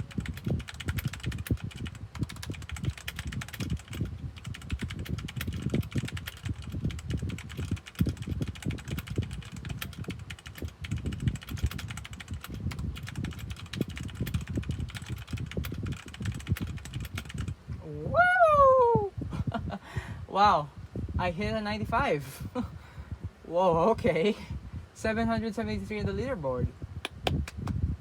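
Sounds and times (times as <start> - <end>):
fast mechanical keyboard typing: 0.0 - 17.6.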